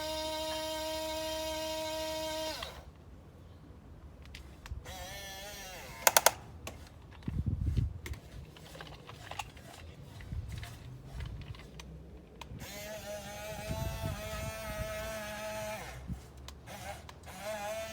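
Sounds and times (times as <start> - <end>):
electric motor whine: 0.0 - 2.9, 4.9 - 6.3, 12.6 - 17.9
sharp clicks: 6.0 - 6.8.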